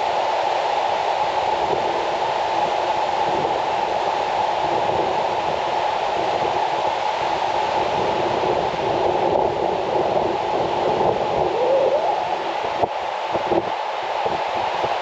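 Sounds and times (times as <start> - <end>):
river water rushing roar: 9.6 - 15.0.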